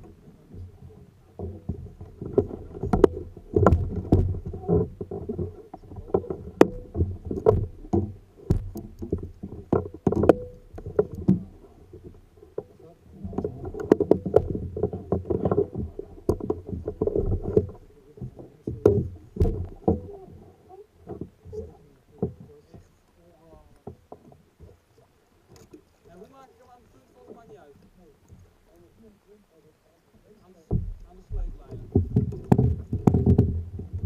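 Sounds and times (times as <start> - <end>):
knocks against a hull: 0.0 - 23.0, 30.6 - 34.0
water splashing and sloshing: 0.0 - 34.0.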